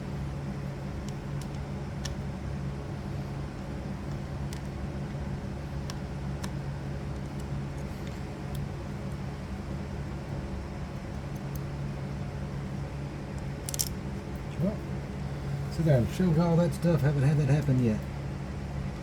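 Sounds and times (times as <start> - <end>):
low background hum: 0.0 - 19.0
small metal parts clicking: 13.6 - 14.0.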